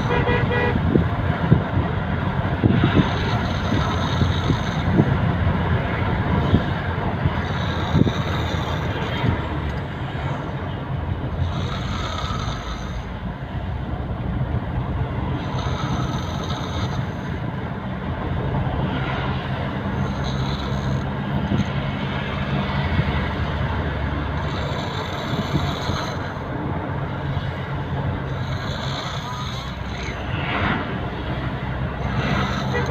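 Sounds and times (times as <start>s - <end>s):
steady low rumble: 0.0s - 32.9s
person snoring heavily: 2.8s - 5.0s, 7.4s - 9.4s, 11.3s - 13.1s, 15.4s - 17.3s, 19.9s - 21.2s, 24.3s - 26.5s, 28.3s - 30.2s, 31.9s - 32.9s.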